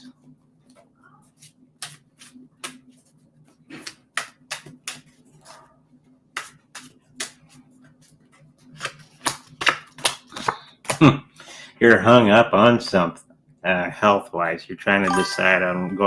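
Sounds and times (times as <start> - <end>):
cards shuffling clicks and slaps: 3.7 - 5.2, 6.3 - 8.2, 8.8 - 11.0.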